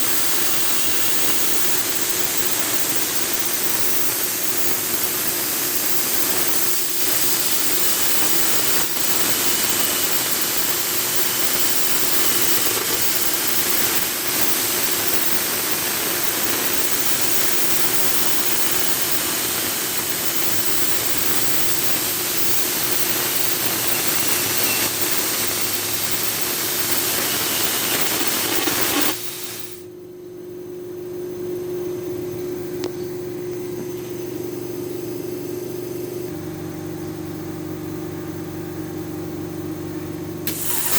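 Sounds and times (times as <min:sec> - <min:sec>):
plasma torch hissing: 0:00.0 - 0:29.9, 0:40.4 - 0:40.9.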